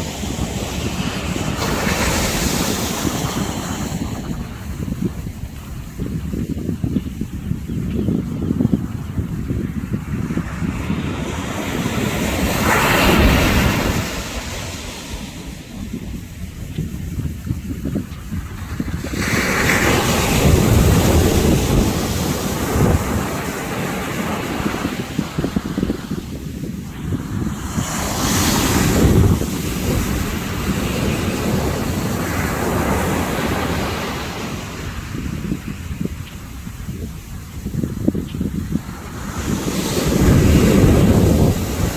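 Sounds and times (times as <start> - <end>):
ocean surf breaking on beach: 0.0 - 7.3, 8.5 - 41.9
wind rumble on microphone: 0.0 - 41.9.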